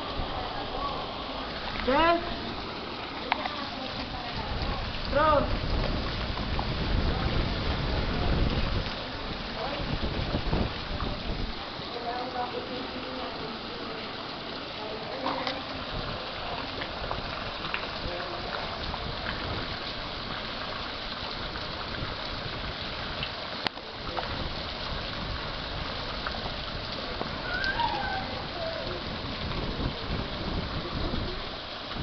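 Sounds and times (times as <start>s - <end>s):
heavy rain falling: 0.0s - 32.0s
wavering call: 27.4s - 28.4s.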